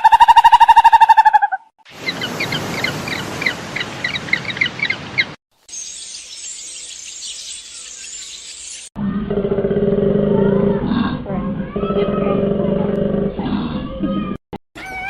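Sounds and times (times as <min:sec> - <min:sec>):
birds chirping: 0:01.9 - 0:08.9.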